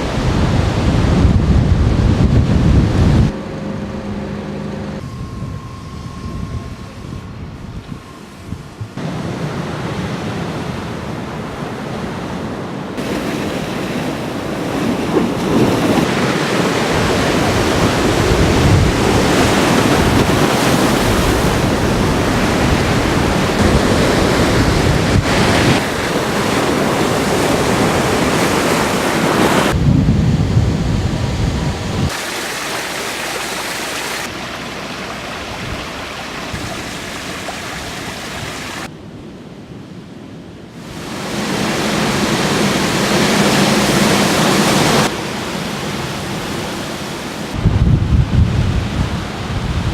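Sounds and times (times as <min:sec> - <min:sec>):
rushing water: 0:00.0 - 0:03.4, 0:09.0 - 0:29.8, 0:31.2 - 0:38.9, 0:40.8 - 0:47.7
wind: 0:00.0 - 0:49.9
heavy rain: 0:30.4 - 0:38.9.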